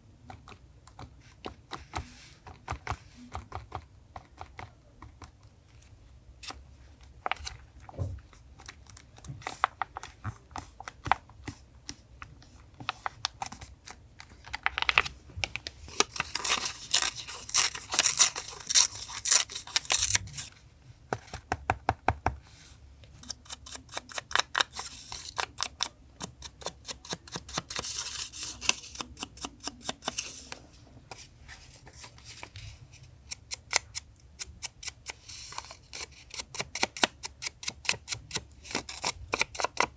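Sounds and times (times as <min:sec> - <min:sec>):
paper tearing and rustling: 0:15.9 - 0:20.5
scissors snipping paper: 0:15.9 - 0:20.5, 0:23.2 - 0:30.6, 0:33.3 - 0:39.9.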